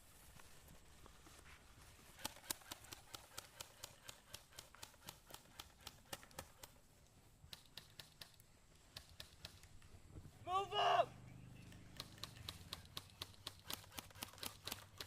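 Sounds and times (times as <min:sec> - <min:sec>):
sharp faint clicks: 0:11.6 - 0:15.0.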